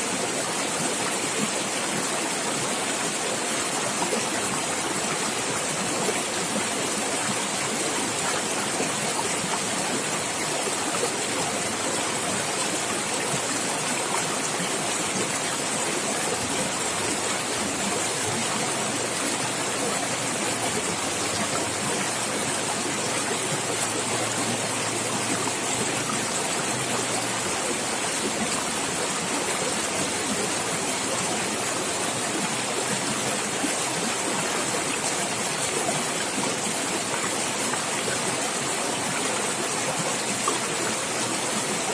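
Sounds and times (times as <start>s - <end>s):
stream water running and gurgling: 0.0s - 41.9s.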